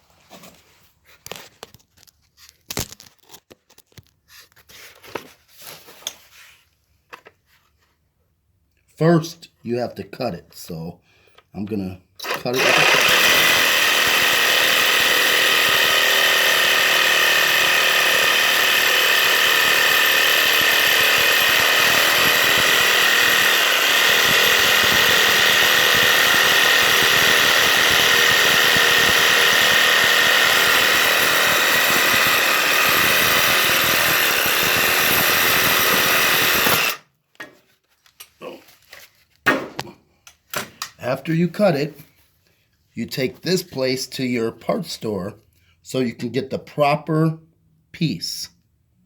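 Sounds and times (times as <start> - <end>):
power cutter cutting metal pipe: 12.2 - 37.0.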